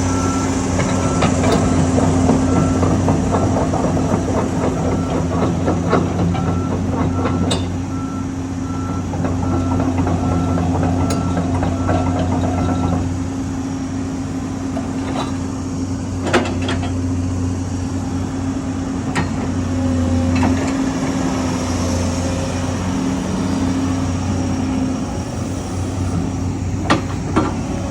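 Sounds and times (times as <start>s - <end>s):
beeping alarm: 0.0s - 13.0s
excavator diesel engine running: 0.0s - 27.9s.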